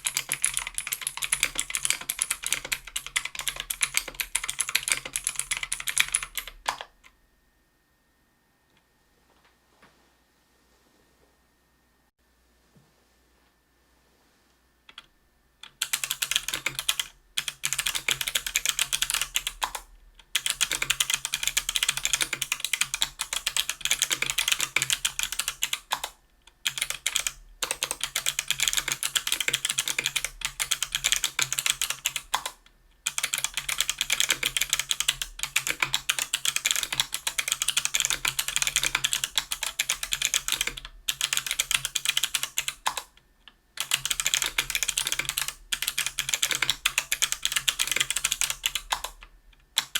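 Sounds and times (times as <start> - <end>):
fast typing on clicky keyboard: 0.0 - 7.0, 14.9 - 43.2, 43.8 - 49.9.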